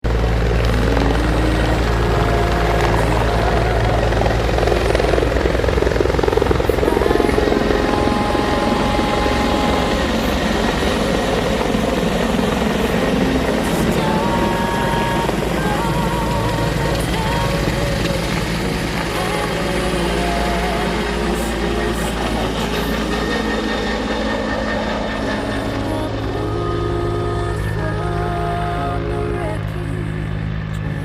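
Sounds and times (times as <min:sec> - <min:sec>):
helicopter rotor beat: 0:00.0 - 0:31.0.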